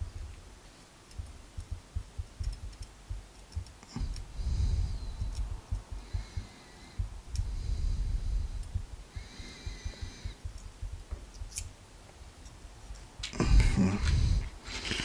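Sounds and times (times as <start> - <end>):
tweezers clicking on metal parts: 1.0 - 11.8
low handling bumps: 1.2 - 14.6.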